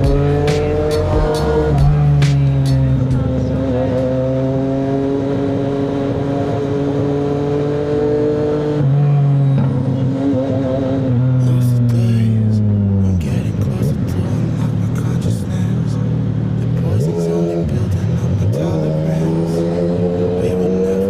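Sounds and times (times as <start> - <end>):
motorcycle engine running: 0.0 - 5.8.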